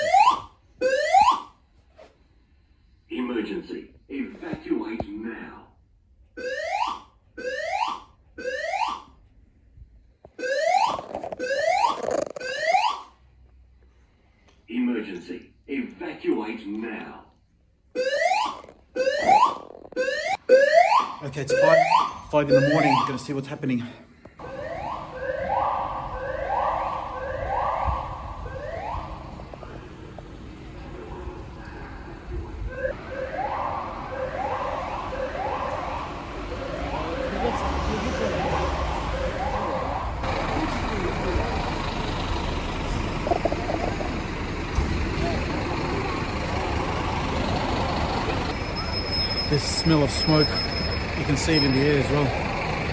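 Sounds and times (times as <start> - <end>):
fire alarm rising whoop: 0.0 - 1.5, 18.0 - 23.1, 24.4 - 29.3, 32.7 - 40.5, 48.5 - 52.8
fire alarm whoop tone: 0.0 - 1.5, 18.0 - 23.2, 48.5 - 52.4.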